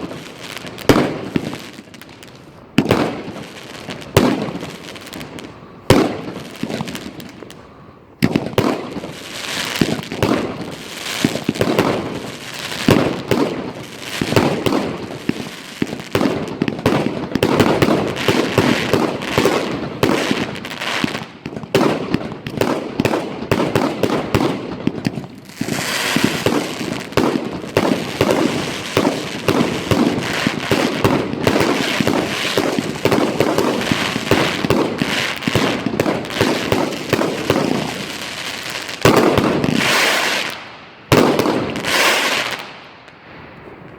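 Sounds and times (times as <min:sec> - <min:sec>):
fireworks launching and bangs: 0:00.0 - 0:43.9.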